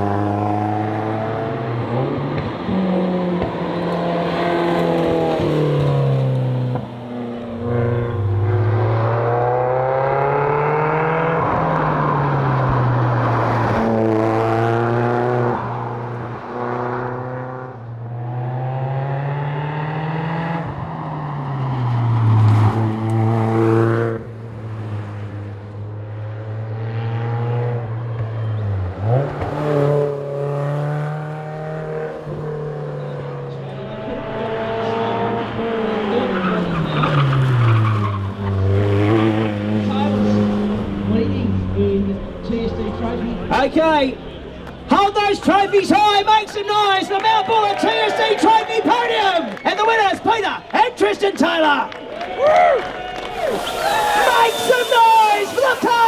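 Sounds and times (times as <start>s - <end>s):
car engine revving: 0.0s - 28.2s, 53.2s - 56.0s.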